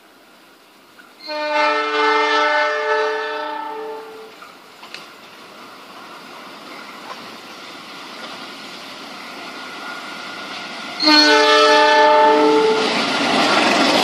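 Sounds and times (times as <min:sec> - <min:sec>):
rush of passing train: 0:00.0 - 0:14.0
train rumbling: 0:00.0 - 0:14.0
locomotive air horn chord: 0:01.2 - 0:04.3, 0:11.0 - 0:12.9.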